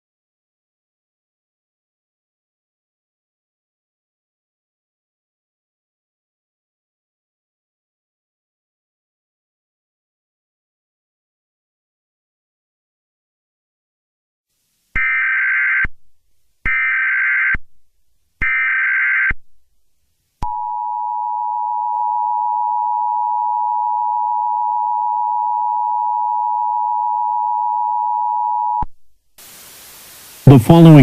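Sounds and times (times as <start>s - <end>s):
two-tone attention signal: 20.4s - 28.8s.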